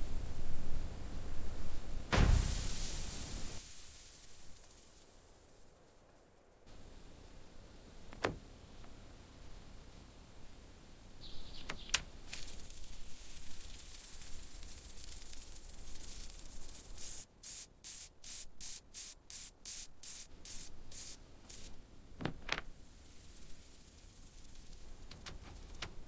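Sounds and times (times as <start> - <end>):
spray hissing: 2.1 - 4.8, 12.3 - 21.8.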